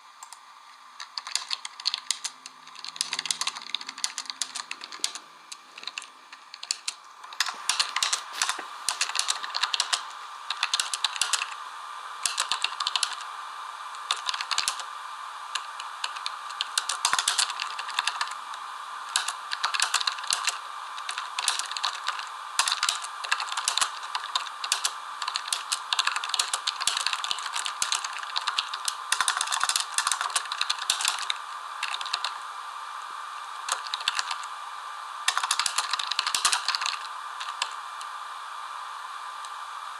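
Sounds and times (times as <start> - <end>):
small hard objects clicking: 35.3 - 37.7.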